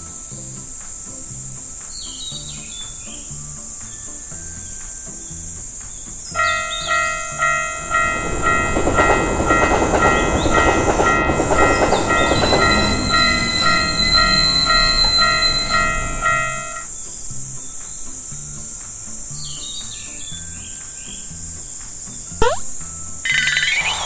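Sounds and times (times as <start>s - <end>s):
railroad crossing bell ringing: 6.4s - 16.9s, 23.3s - 24.0s
train rushing past: 6.6s - 16.9s.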